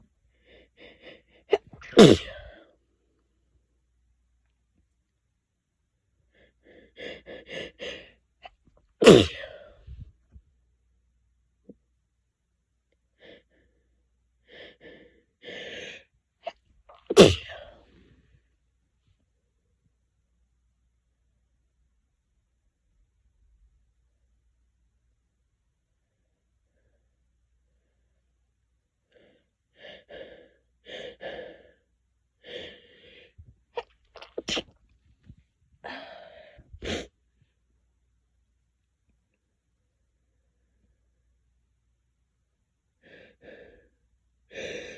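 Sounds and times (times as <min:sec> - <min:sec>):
loud sneeze: 0:01.5 - 0:02.6, 0:09.0 - 0:09.6, 0:16.4 - 0:17.8, 0:33.8 - 0:34.8, 0:36.8 - 0:37.1
person gasping breaths: 0:06.3 - 0:08.2, 0:29.1 - 0:33.4, 0:35.8 - 0:37.1, 0:43.0 - 0:44.9
gasping in-breaths: 0:35.8 - 0:37.1, 0:43.0 - 0:44.9.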